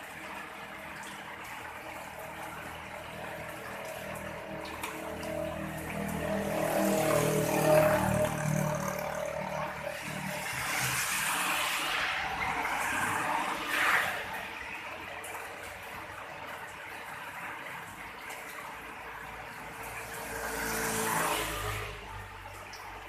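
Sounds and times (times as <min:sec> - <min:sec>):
vehicle passing by: 0:03.2 - 0:14.8, 0:19.5 - 0:23.0.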